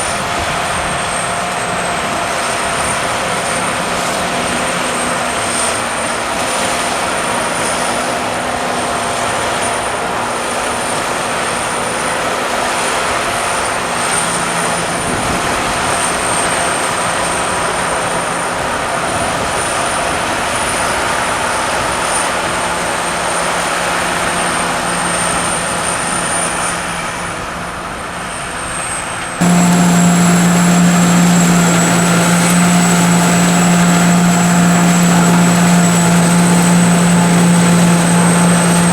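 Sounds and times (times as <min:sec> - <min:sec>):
low steady engine note: 0:22.3 - 0:38.9
harvester machine drone: 0:29.0 - 0:38.9.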